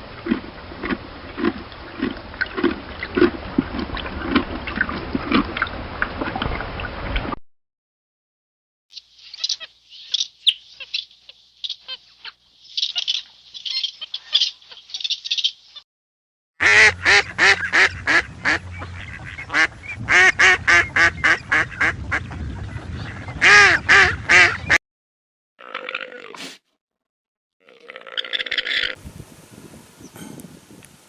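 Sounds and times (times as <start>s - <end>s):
thin high chirping calls: 8.9s - 15.8s
loud harsh animal calls: 27.6s - 29.0s.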